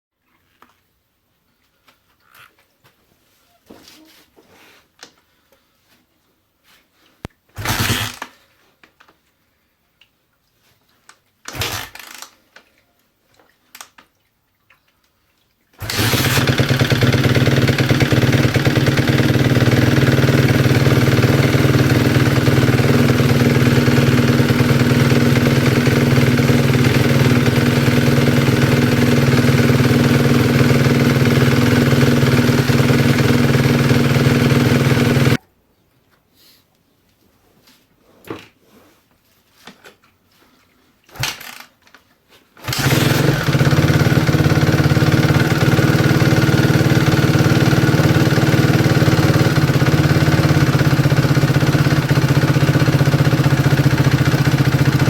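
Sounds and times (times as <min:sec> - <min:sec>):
motorcycle engine kick-start bursts: 0:07.5 - 0:08.4, 0:11.5 - 0:12.4, 0:15.8 - 0:35.4, 0:41.1 - 0:41.7, 0:42.6 - 0:55.0
motorcycle engine idling: 0:15.9 - 0:35.4, 0:42.7 - 0:55.0.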